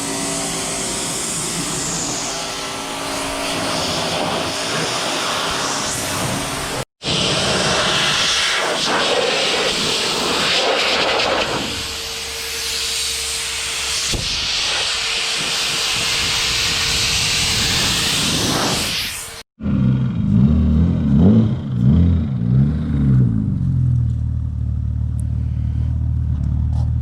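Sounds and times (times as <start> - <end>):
loud hissing noise: 0.0 - 19.4.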